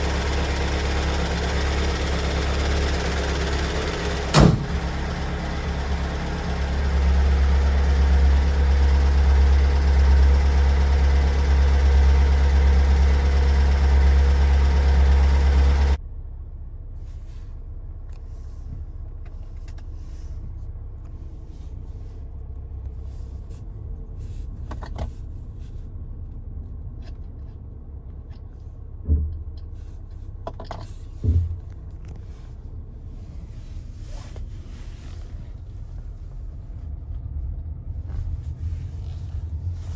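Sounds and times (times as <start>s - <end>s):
diesel engine running: 0.0s - 17.2s
short thumps: 2.0s - 7.2s, 28.9s - 29.8s, 31.1s - 32.0s
faint low rumble: 15.9s - 39.9s.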